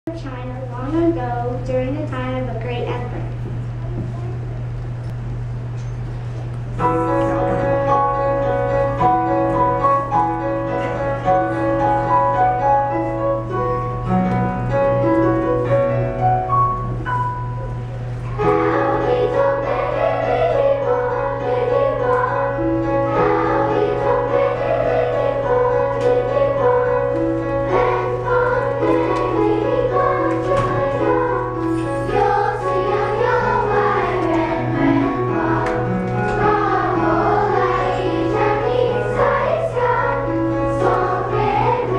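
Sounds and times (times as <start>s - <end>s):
steady low hum: 0.1s - 41.9s
instrumental ensemble held notes: 6.8s - 41.9s
children's choir singing: 18.4s - 41.9s.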